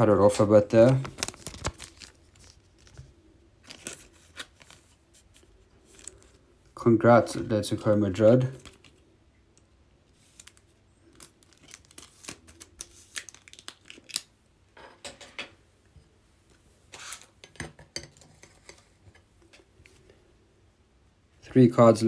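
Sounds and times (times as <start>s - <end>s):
trading cards being handled: 0.7s - 6.4s, 7.9s - 9.1s, 10.1s - 14.3s.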